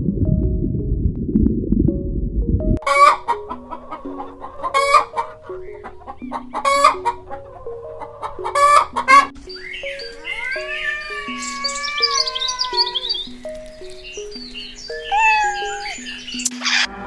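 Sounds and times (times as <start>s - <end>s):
background music: 0.0s - 17.0s
chicken calling: 2.9s - 9.3s, 10.2s - 13.4s, 14.8s - 16.4s
chicken clucking: 2.9s - 9.3s.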